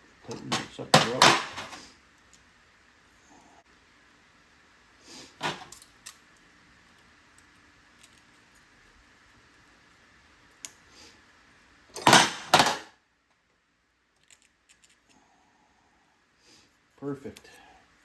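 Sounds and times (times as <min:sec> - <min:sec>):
loud metallic clatters: 0:00.3 - 0:01.8.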